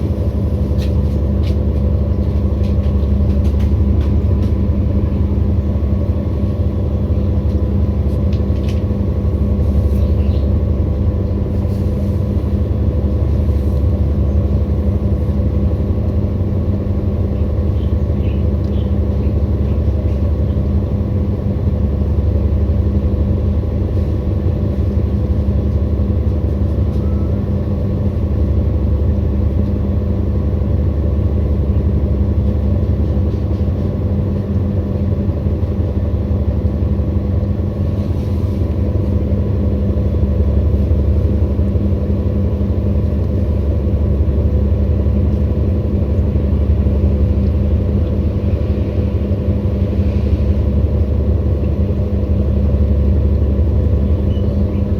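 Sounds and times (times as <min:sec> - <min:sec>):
washing machine spin cycle rumble: 0:00.0 - 0:54.9.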